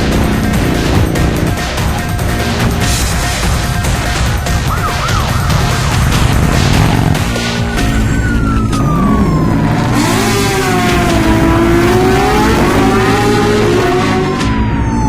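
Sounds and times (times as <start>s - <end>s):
vehicle engine revving past: 5.4s - 8.4s.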